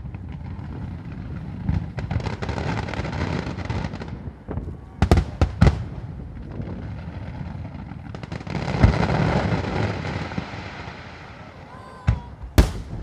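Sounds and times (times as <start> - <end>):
fireworks rumbling hiss: 0.0 - 13.0
firework bangs: 12.2 - 13.0.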